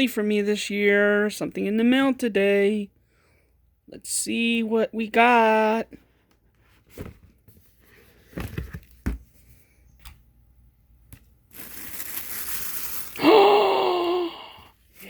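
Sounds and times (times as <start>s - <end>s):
packaging tearing: 11.5s - 13.5s
person exclaiming: 13.2s - 14.7s.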